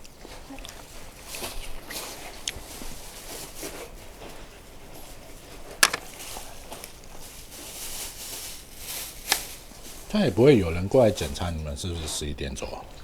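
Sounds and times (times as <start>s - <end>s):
light rustling: 0.2s - 12.7s
small clicks of objects handled: 5.8s - 6.1s.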